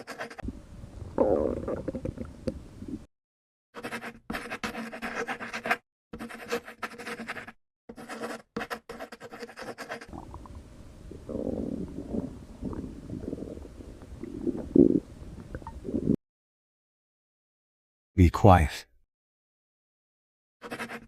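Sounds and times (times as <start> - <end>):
stomach rumbling and gurgling: 0.4 - 3.1, 10.1 - 16.2.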